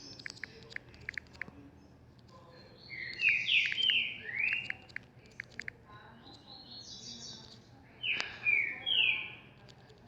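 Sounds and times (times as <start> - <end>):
sharp clicks: 0.0 - 1.5, 3.1 - 6.4
bird chirping: 2.6 - 5.6.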